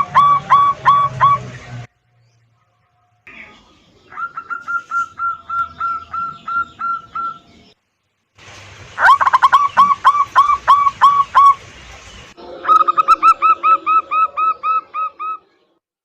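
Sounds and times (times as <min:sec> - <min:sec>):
dove cooing: 0:00.0 - 0:01.6, 0:04.0 - 0:07.5, 0:12.4 - 0:15.6.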